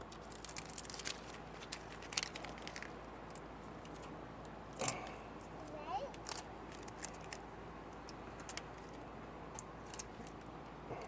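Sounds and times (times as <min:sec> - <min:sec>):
plastic film peeling crackle: 0:00.0 - 0:03.0, 0:06.1 - 0:07.4.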